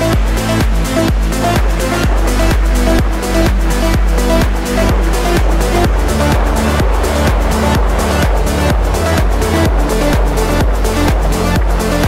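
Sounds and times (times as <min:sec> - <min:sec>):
electronic music with drum beat: 0:00.0 - 0:12.0.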